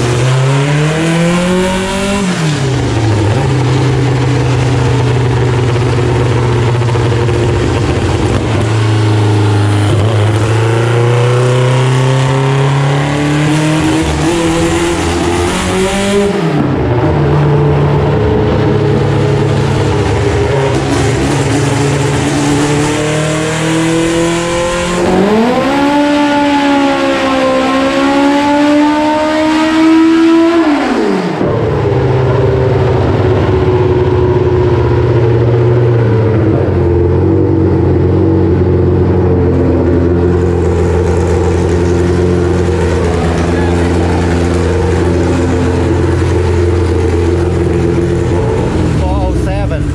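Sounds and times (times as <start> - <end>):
car engine revving hard: 0.0 - 49.9.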